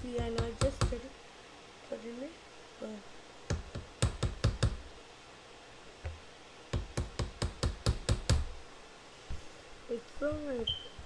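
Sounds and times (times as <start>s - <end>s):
baking gear knocking on surface: 0.0s - 1.0s, 3.5s - 4.8s, 6.0s - 8.5s.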